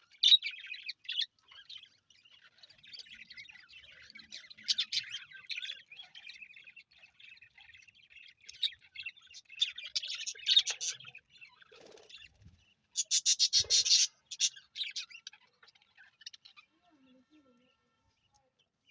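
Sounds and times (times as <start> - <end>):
budgerigars chirping: 0.0 - 16.7.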